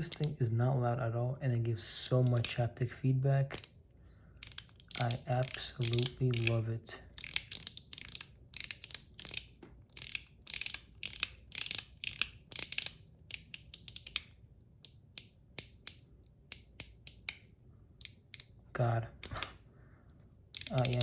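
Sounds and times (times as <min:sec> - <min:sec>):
mechanical slider clicking: 0:04.4 - 0:06.6, 0:20.5 - 0:21.0.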